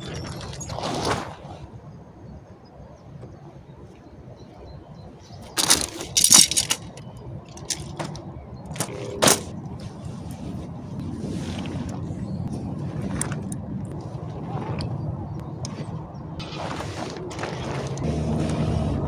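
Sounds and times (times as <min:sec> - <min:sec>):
sharp clatters and knocks: 0:05.5 - 0:09.6.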